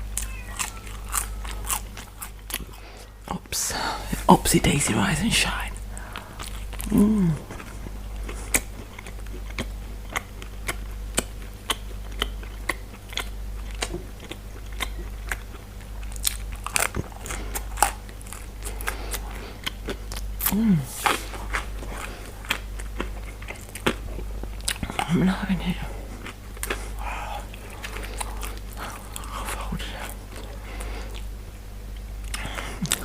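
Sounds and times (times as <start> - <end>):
crunching: 0.0 - 3.1
chewing and biting food: 0.0 - 3.3, 5.8 - 33.0
low falling hum: 0.0 - 11.4, 13.6 - 33.0.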